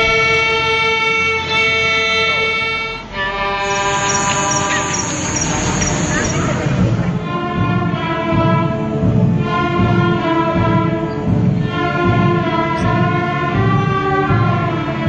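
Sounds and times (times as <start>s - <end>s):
orchestral bowed strings: 0.0s - 15.0s
low pulsing bass: 3.1s - 13.8s.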